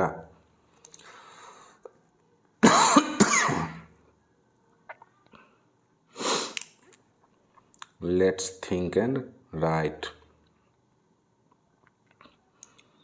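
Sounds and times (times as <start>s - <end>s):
person coughing: 2.6s - 3.9s.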